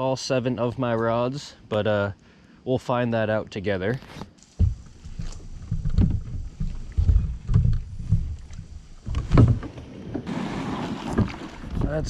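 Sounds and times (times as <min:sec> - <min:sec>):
kayak gear thumping: 0:04.0 - 0:12.0.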